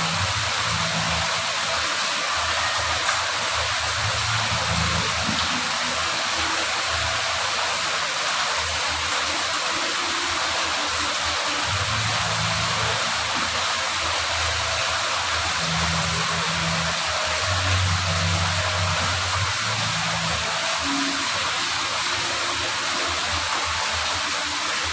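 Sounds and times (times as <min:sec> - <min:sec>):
steady rain falling: 0:00.0 - 0:24.9.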